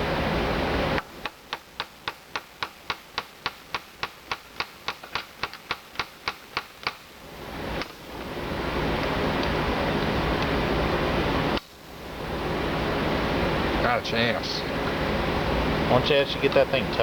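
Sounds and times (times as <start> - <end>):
steady background noise: 0.0 - 17.0.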